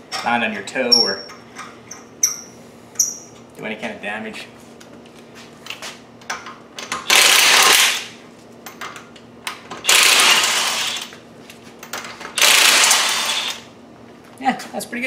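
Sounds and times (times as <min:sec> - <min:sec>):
impact wrench hammering: 0:06.8 - 0:08.2, 0:09.8 - 0:11.1, 0:12.4 - 0:13.7.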